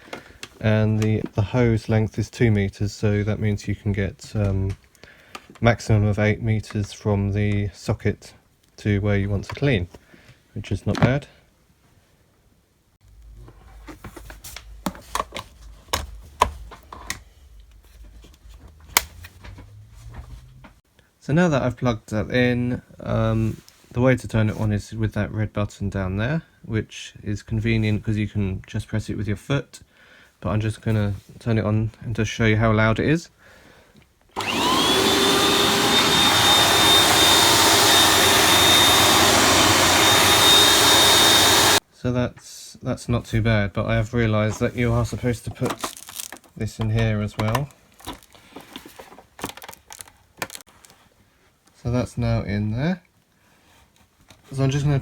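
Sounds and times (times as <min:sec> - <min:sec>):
vacuum cleaner running: 0:34.4 - 0:41.8
hands handling power cable and plug: 0:45.5 - 0:51.0.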